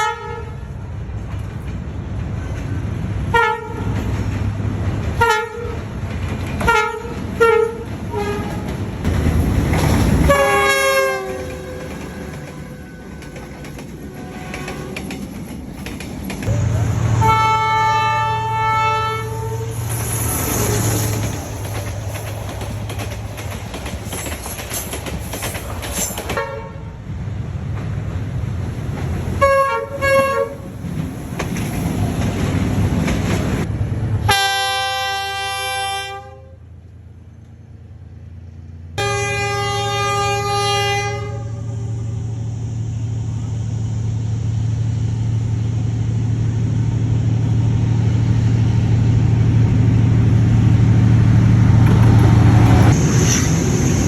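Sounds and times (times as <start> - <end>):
diesel locomotive horn: 0.0 - 0.9, 3.3 - 4.0, 5.2 - 5.9, 6.6 - 8.9, 10.2 - 15.2, 16.4 - 21.2, 26.4 - 27.0, 29.3 - 30.7, 34.2 - 36.8, 39.0 - 42.4
low train rumble: 0.0 - 54.0
train clatter: 1.1 - 17.4, 19.4 - 26.9, 27.7 - 33.7, 47.6 - 54.0.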